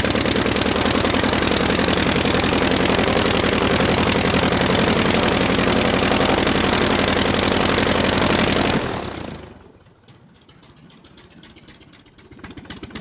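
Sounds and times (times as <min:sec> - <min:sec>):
aircraft engine running: 0:00.0 - 0:10.0.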